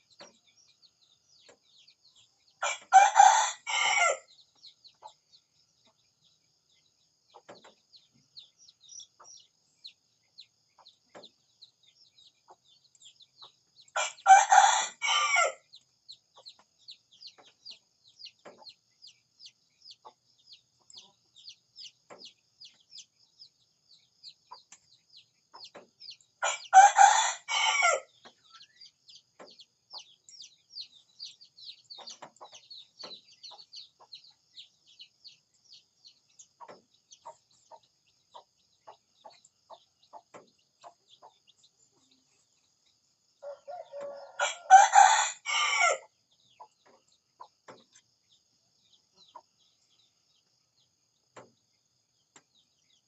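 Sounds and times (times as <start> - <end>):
rooster crowing: 2.6 - 4.3, 14.0 - 15.6, 26.4 - 28.1, 43.4 - 46.0.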